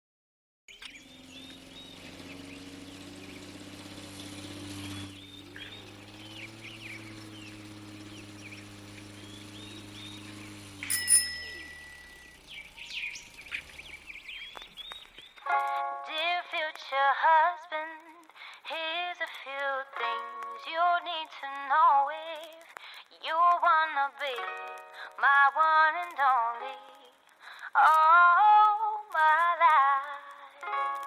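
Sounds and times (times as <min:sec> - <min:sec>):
birds chirping: 0:00.7 - 0:15.8
sharp ringing hit: 0:10.8 - 0:12.4.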